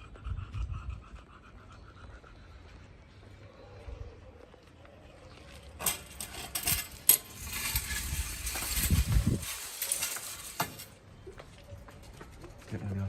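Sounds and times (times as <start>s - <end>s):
bicycle parts clinking and rattling: 5.8s - 11.0s.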